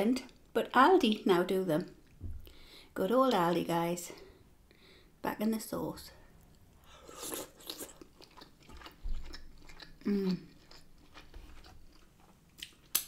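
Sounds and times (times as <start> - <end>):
wet chewing and lip smacks: 6.4 - 13.0.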